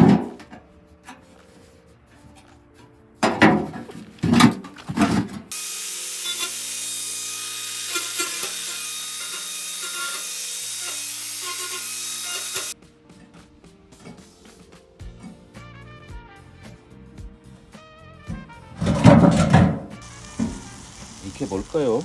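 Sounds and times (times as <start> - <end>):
soft background music: 0.0 - 5.5, 12.7 - 22.0
loud bumps: 18.3 - 20.6
steady hissing rush: 20.0 - 22.0.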